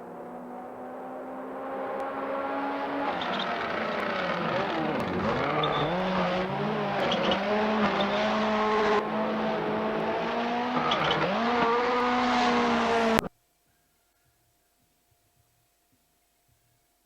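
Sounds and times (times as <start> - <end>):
race car engine at high revs: 0.0 - 13.3.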